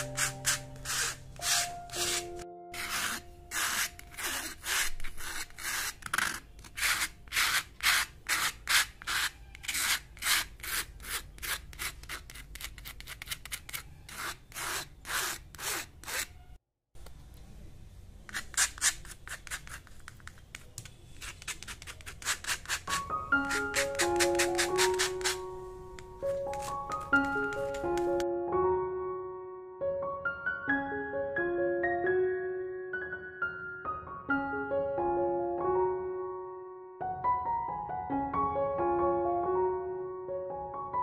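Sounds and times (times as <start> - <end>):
paint rubbing strokes on canvas: 0.0 - 11.8, 26.2 - 28.2.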